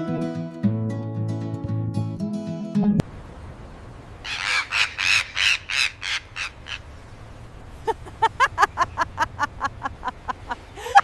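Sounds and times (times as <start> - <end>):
parrot chattering calls: 4.2 - 6.8
parrot squawking: 4.2 - 6.8.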